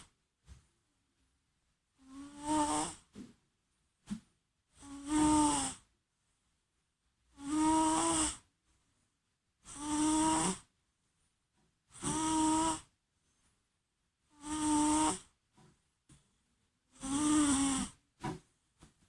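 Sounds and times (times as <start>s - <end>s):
cat snoring: 2.0s - 3.1s, 4.8s - 5.8s, 7.4s - 8.4s, 9.6s - 10.7s, 11.9s - 12.9s, 14.3s - 15.3s, 16.9s - 18.0s.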